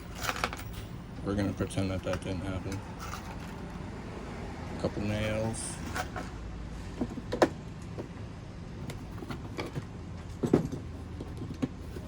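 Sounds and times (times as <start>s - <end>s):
hardware rattling in a toolbox: 0.0s - 3.8s, 5.0s - 8.1s, 8.9s - 12.0s.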